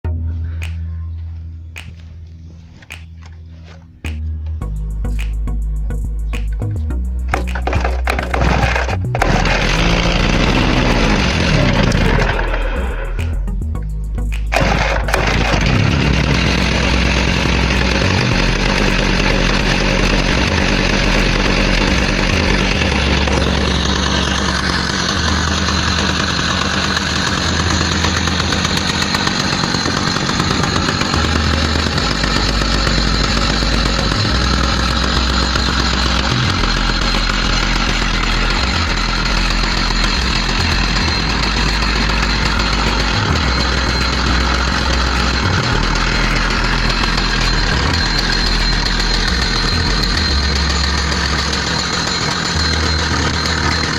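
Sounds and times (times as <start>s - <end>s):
two-stroke saw engine running: 6.3s - 53.9s.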